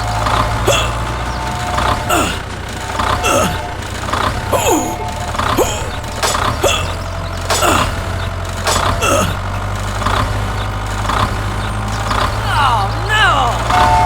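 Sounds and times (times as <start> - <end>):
low engine-like drone: 0.0 - 14.0.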